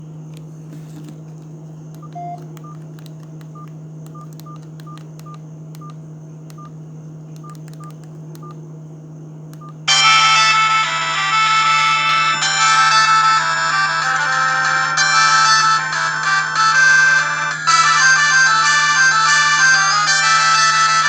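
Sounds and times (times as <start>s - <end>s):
steady low hum: 0.0s - 21.0s
button clicks: 2.0s - 6.7s, 7.4s - 8.6s, 9.6s - 9.8s
phone keypad beeps: 2.0s - 6.7s, 7.4s - 8.6s, 9.6s - 9.8s.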